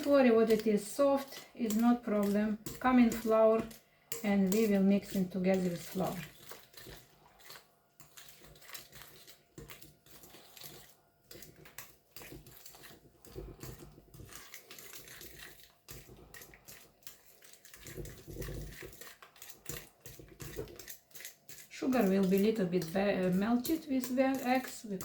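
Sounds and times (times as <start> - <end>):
utensil scraping a mixing bowl: 0.0 - 25.0.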